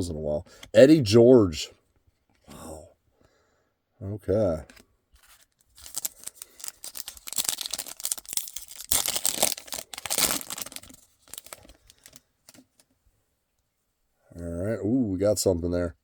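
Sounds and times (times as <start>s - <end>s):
card pack wrapper tearing: 5.2s - 12.6s.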